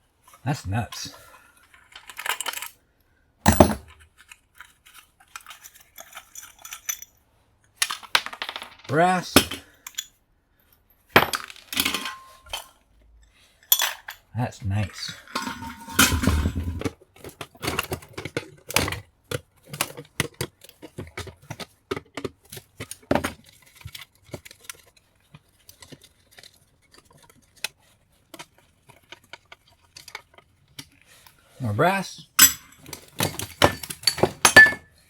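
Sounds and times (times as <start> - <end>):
brass scrap clinking and clattering: 11.2 - 12.7, 15.0 - 16.9, 32.4 - 34.9.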